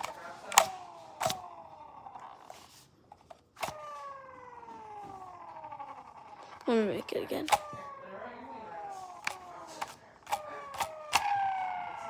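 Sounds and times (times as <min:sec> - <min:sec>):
electronic siren tone: 0:03.6 - 0:12.0.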